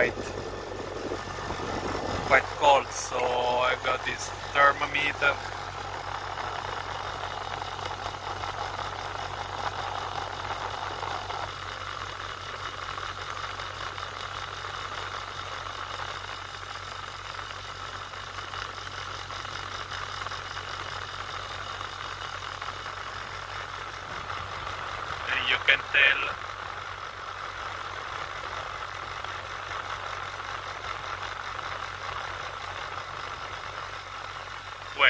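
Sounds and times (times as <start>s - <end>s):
blower air rushing: 0.0s - 12.3s, 23.0s - 30.0s
air conditioner compressor humming: 0.0s - 35.0s.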